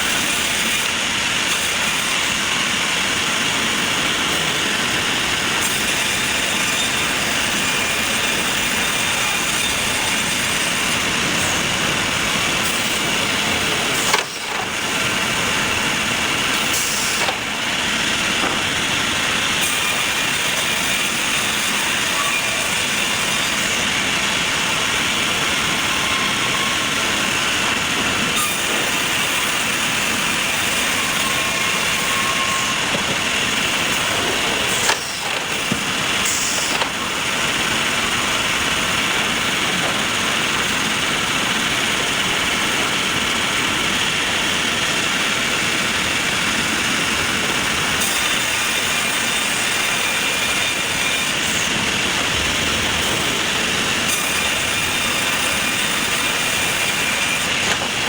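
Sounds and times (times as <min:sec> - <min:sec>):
sawmill machinery running: 0:00.0 - 0:58.0.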